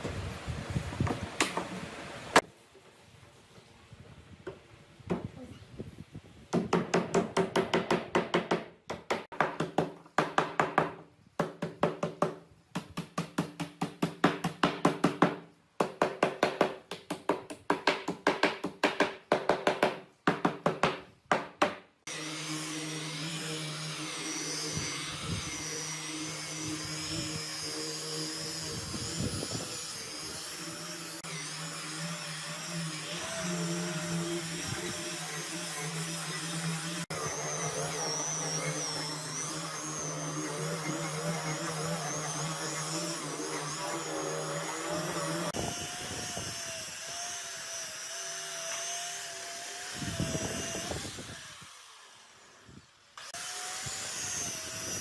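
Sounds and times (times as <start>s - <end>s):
power tool motor humming: 22.1s - 55.0s.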